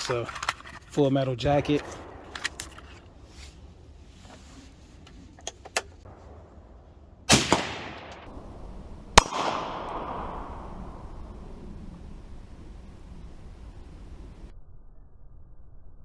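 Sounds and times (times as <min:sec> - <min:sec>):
rifle shots with echo: 0:01.4 - 0:03.9, 0:06.0 - 0:11.4.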